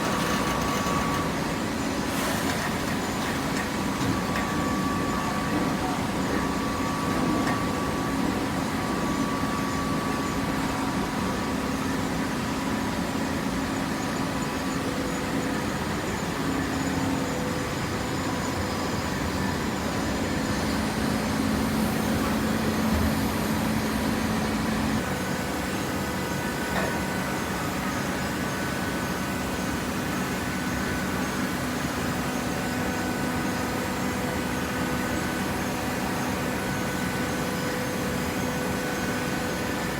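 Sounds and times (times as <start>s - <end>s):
machine motor humming: 20.5s - 25.5s.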